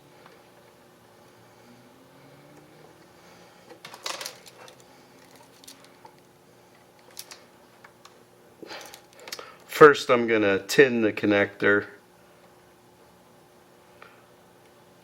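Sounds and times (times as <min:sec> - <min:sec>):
faint steady hum: 0:00.0 - 0:15.0
small tools clicking and rustling: 0:03.7 - 0:06.3, 0:07.0 - 0:09.5.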